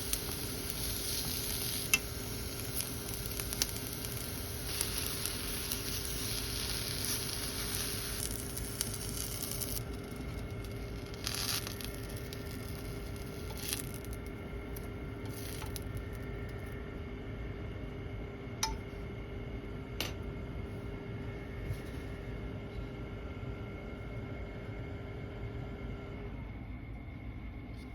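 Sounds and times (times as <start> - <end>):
vegetables sizzling in frying pan: 0.0 - 14.3, 15.2 - 16.0
faint steady hum: 0.0 - 27.9.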